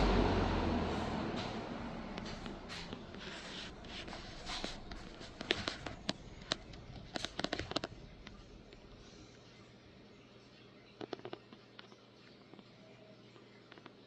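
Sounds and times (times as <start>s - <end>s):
box fan winding down: 0.0s - 9.0s.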